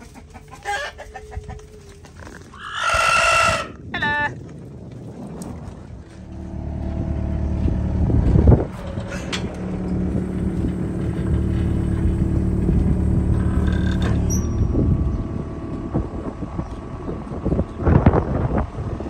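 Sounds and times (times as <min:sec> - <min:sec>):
skid loader engine running: 0:06.2 - 0:19.0.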